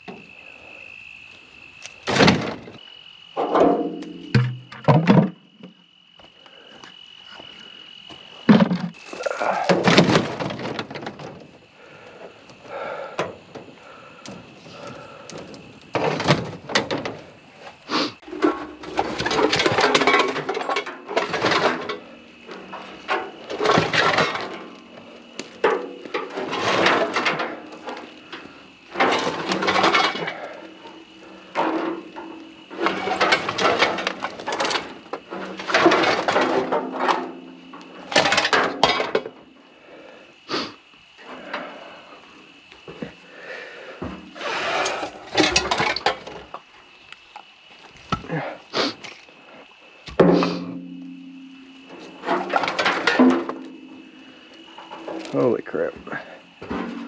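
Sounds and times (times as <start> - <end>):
scrap metal clanking and scraping: 3.4 - 5.7, 8.4 - 11.6, 13.2 - 39.5, 44.0 - 46.6, 50.1 - 57.0.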